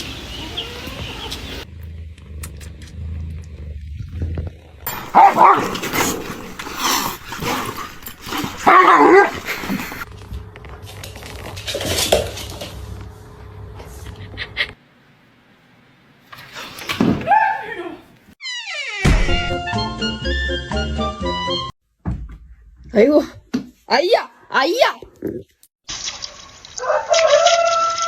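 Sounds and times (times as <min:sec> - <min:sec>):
dog barking: 0:04.9 - 0:10.0.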